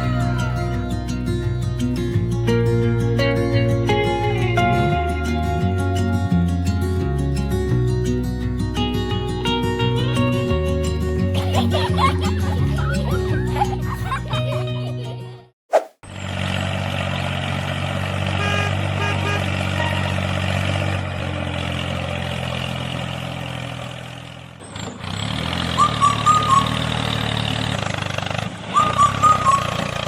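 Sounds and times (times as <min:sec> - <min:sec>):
tractor engine running: 0:16.2 - 0:30.0.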